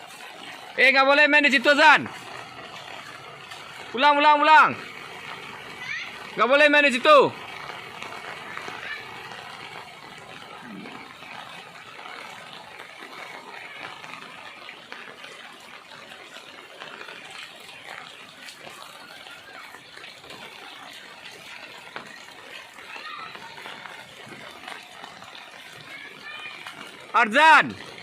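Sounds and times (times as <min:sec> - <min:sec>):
steady rain falling: 0:00.0 - 0:28.0.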